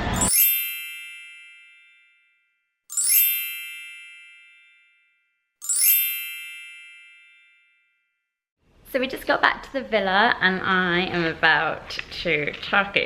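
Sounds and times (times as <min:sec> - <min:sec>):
bright sparkling chime: 0:00.0 - 0:08.0.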